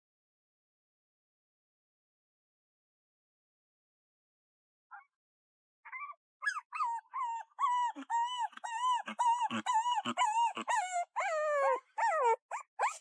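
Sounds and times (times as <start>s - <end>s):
puppy whimpering: 5.9s - 13.0s.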